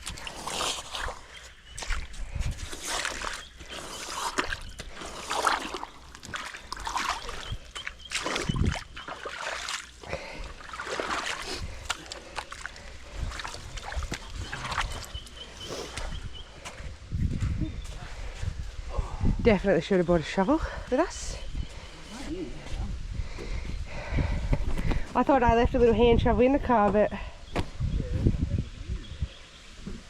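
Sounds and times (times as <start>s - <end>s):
puddle water splashing: 0.0s - 16.2s.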